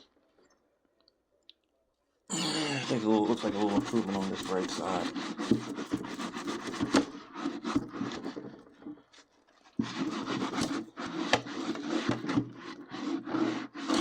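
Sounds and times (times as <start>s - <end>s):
wiping scraping inside toaster oven: 2.9s - 8.6s, 9.8s - 14.0s.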